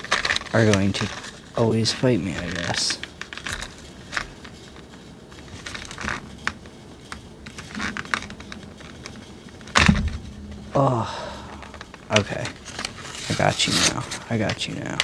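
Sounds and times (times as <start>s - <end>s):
plastic packaging crinkling: 0.0s - 15.0s
loud knock: 9.8s - 12.0s.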